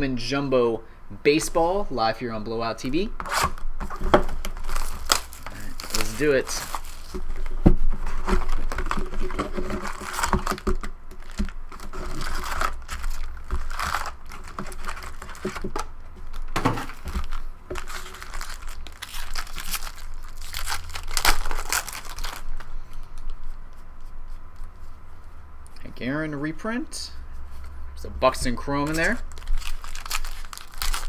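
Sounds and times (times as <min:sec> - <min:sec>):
wrappers crinkling and tearing: 0:03.2 - 0:23.5, 0:28.8 - 0:31.0.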